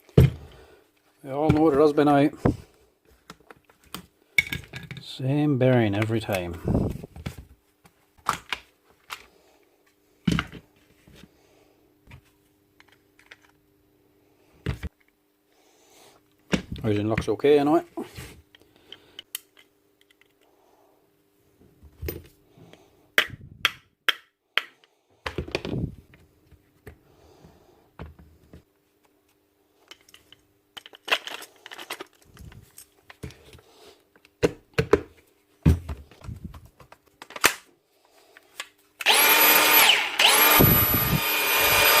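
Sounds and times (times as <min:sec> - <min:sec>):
power tool being handled: 0:38.5 - 0:42.0
power tool motor whining: 0:39.0 - 0:42.0.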